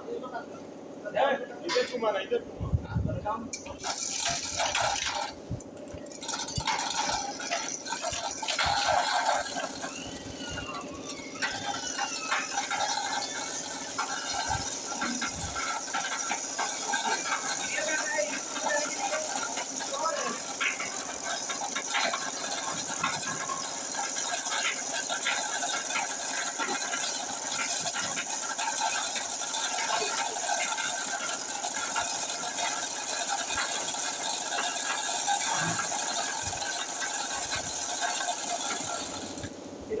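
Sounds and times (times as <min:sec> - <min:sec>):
mechanical rattling and clicking: 0:01.7 - 0:40.0.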